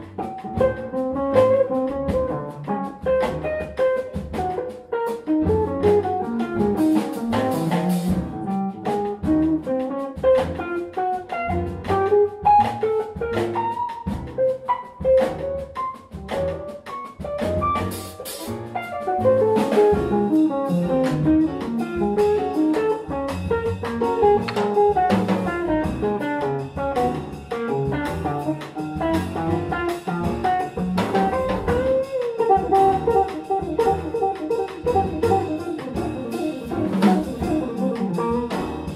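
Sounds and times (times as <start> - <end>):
drum kit: 0.0 - 38.9
jazz guitar solo: 0.0 - 38.9.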